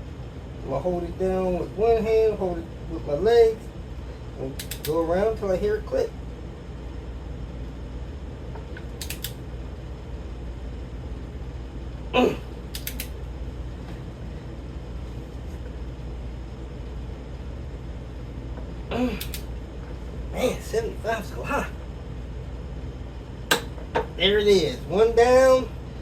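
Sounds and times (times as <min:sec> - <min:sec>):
steady low hum: 0:00.0 - 0:26.0
wrench clicking on a bolt: 0:09.0 - 0:09.4
person grunting with effort: 0:12.1 - 0:12.6, 0:18.9 - 0:19.4.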